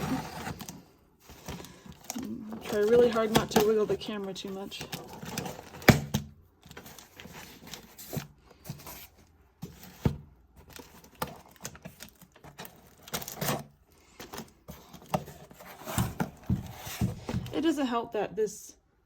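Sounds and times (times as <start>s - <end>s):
packaging rustling and tearing: 0.0s - 17.1s.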